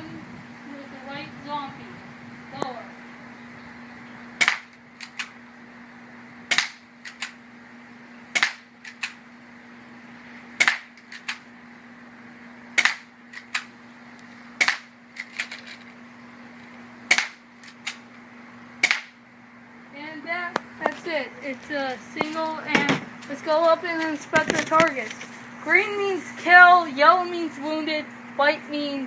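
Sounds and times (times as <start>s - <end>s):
airsoft pistol shots: 4.4s - 5.3s, 6.5s - 7.4s, 8.4s - 9.2s, 10.6s - 11.4s, 12.8s - 13.7s, 14.6s - 14.9s, 17.1s - 18.0s, 18.8s - 19.2s.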